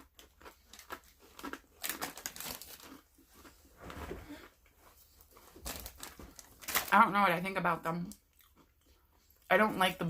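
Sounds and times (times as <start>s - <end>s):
plastic chip bag crinkling: 0.0s - 3.6s, 5.2s - 7.5s.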